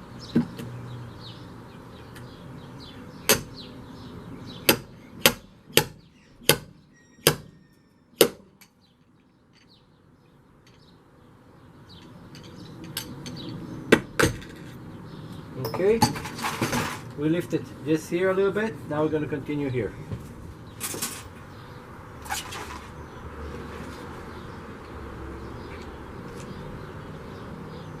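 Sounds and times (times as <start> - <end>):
hammer striking metal: 4.7 - 8.8.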